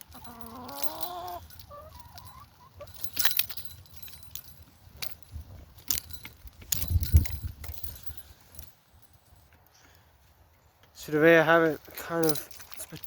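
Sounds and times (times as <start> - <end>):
hen clucking: 0.1 - 2.9
sharp clicks and rattles: 2.9 - 8.7.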